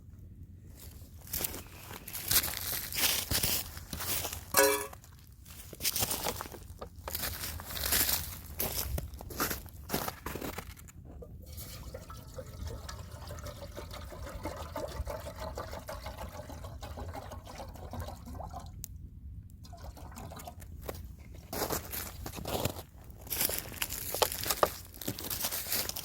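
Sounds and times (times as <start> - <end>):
clicks and crackles: 10.3 - 11.0
water pouring into a pot: 11.4 - 18.8, 19.6 - 20.6.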